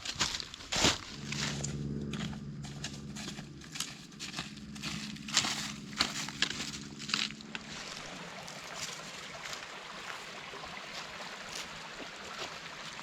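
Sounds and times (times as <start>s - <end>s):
faint low hum: 0.0s - 9.0s
footsteps crunching on rocky trail: 0.0s - 10.2s.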